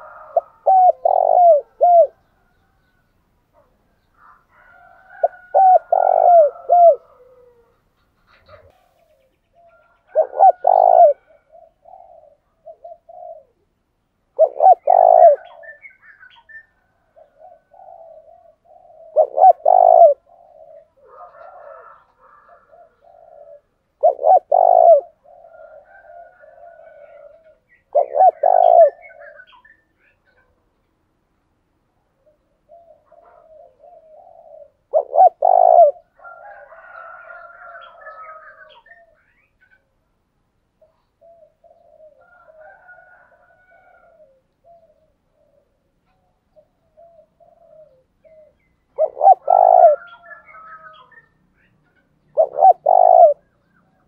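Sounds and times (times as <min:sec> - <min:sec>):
dove cooing: 0:00.0 - 0:03.0, 0:03.6 - 0:30.6, 0:32.0 - 0:40.0, 0:40.8 - 0:54.0.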